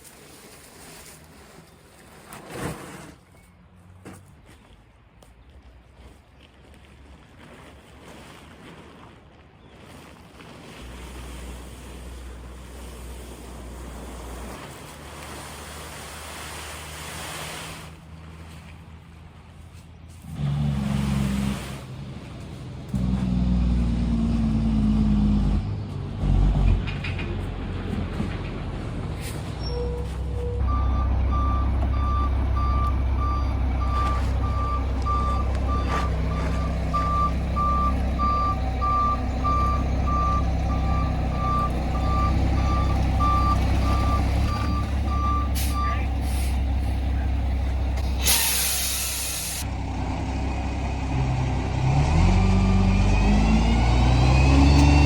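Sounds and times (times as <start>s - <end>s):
truck engine running: 20.2s - 55.0s
reversing alarm beeping: 29.6s - 46.2s
air brake hiss: 48.2s - 49.6s.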